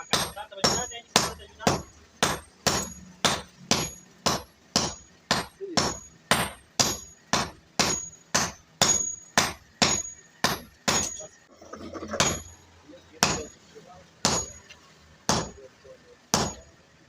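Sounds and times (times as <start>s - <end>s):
hammer striking iron on anvil: 0.0s - 11.4s, 12.2s - 12.5s, 13.2s - 13.6s, 14.2s - 14.6s, 15.3s - 15.6s, 16.3s - 16.7s.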